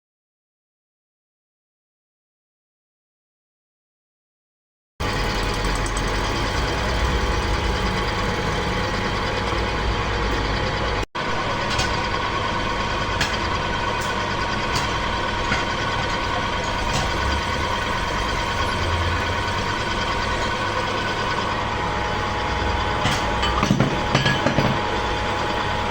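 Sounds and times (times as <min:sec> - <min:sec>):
metal lathe whining: 0:05.0 - 0:11.0, 0:12.0 - 0:25.9.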